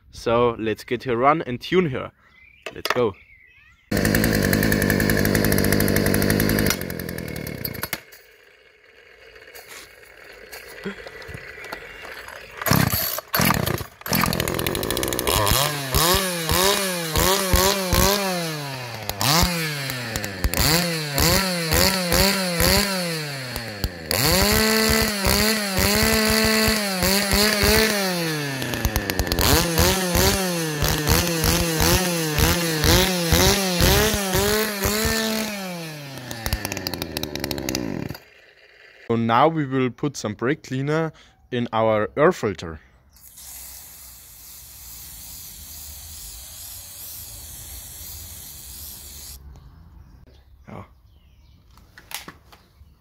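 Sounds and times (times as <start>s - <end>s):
chainsaw revving: 3.9s - 39.1s, 43.2s - 49.4s.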